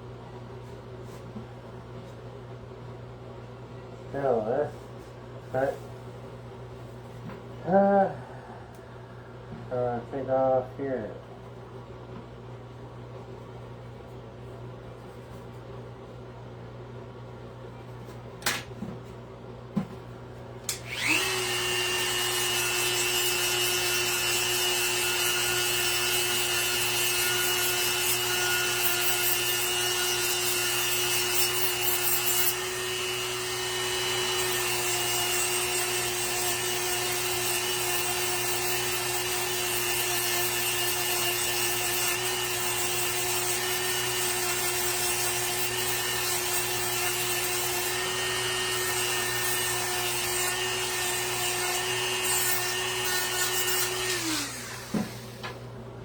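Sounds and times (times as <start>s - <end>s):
rotary power tool shaping wood: 20.8s - 55.5s.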